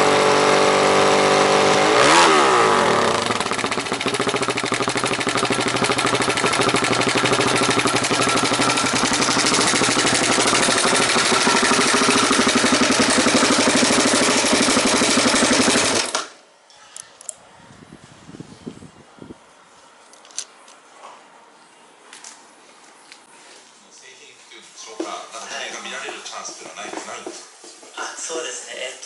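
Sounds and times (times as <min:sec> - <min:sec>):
motorcycle engine idling: 0:02.8 - 0:16.1.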